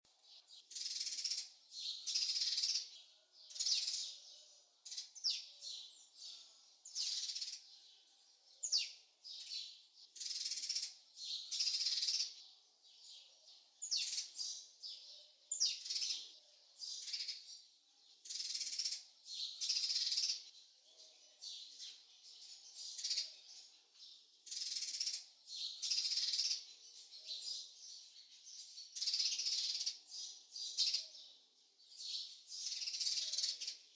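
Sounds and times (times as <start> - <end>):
small birds chirping: 0.0 - 33.9.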